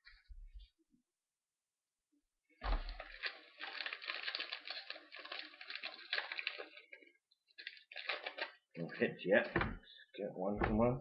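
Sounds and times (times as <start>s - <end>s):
foil wrapper crinkling and cards clicking: 2.6s - 8.7s.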